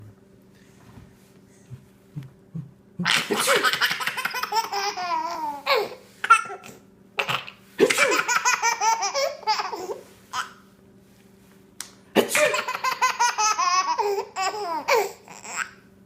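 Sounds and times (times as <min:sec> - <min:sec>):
young child laughing hard: 0:07.8 - 0:10.5.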